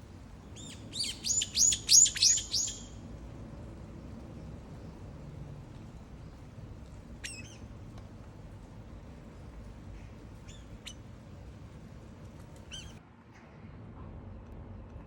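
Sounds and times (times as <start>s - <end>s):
low steady hum: 0.0s - 13.0s
bird giving shrill calls: 0.6s - 3.0s, 7.2s - 7.6s, 12.7s - 13.0s.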